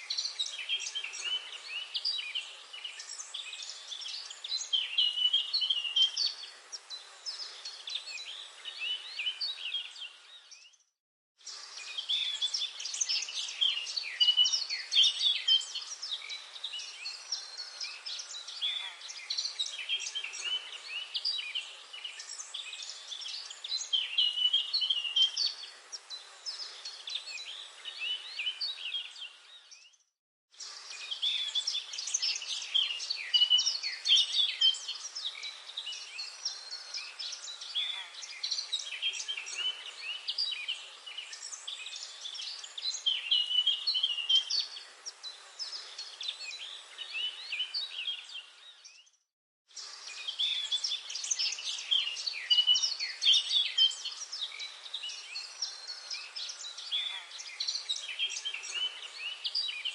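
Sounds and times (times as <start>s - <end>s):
birds chirping and singing: 0.0s - 10.8s, 11.5s - 30.0s, 30.6s - 49.2s, 49.8s - 59.9s.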